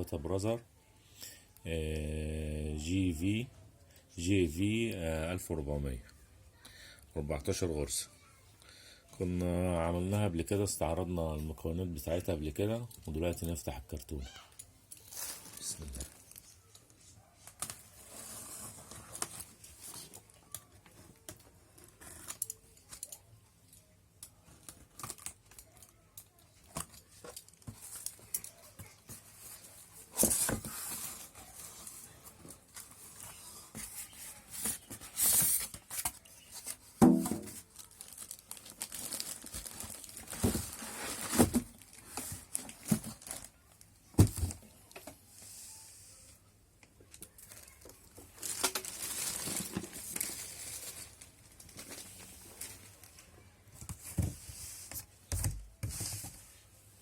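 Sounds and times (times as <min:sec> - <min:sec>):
plastic wrapping crinkling: 0:14.2 - 0:43.9, 0:47.1 - 0:53.3.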